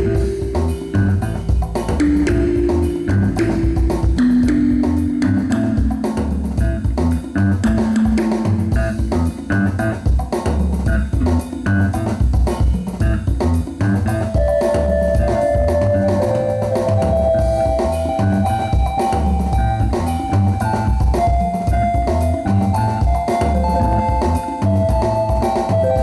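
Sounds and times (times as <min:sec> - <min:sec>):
bass guitar: 0:00.0 - 0:26.0
drum kit beat: 0:00.0 - 0:26.0
electric guitar: 0:00.0 - 0:26.0.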